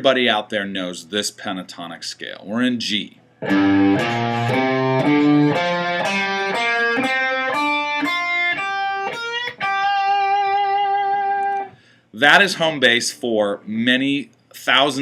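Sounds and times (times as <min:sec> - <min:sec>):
guitar playing a scale: 0:03.4 - 0:11.8.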